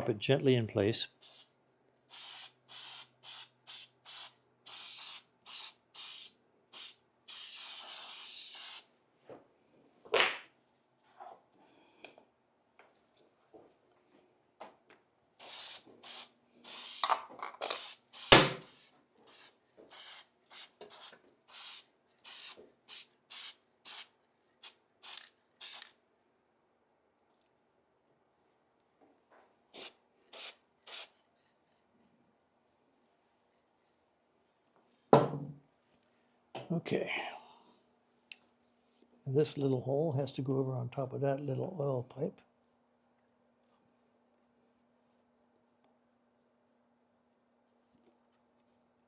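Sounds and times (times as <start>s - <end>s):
aerosol spray hisses: 1.2s - 1.5s, 2.1s - 8.9s, 15.4s - 25.9s, 29.8s - 31.1s
knock: 35.2s - 35.6s.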